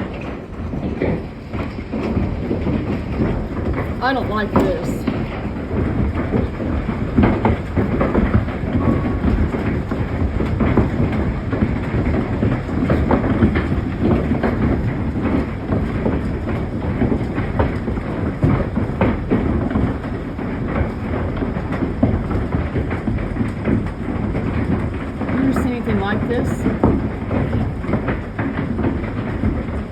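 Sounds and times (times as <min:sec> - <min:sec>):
hail pounding down: 0:00.0 - 0:29.9
storm roar: 0:00.0 - 0:29.9.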